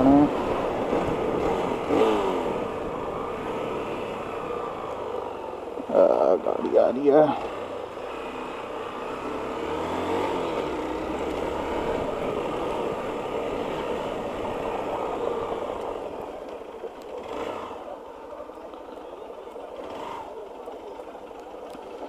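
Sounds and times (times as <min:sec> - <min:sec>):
vehicle passing by: 0:00.0 - 0:05.5, 0:07.2 - 0:16.2.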